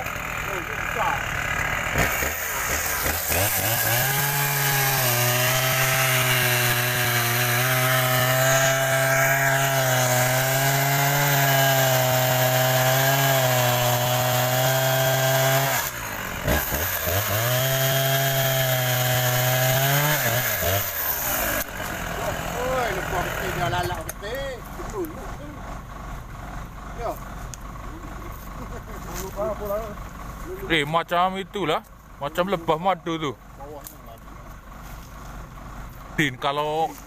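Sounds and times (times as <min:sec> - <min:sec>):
chainsaw cutting wood: 0:00.0 - 0:24.2.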